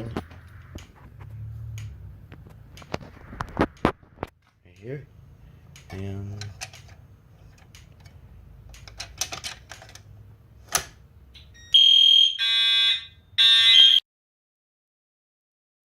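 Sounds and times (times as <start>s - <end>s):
pull station clicks and knocks: 5.8s - 11.0s
fire alarm horn blasts: 11.4s - 14.0s.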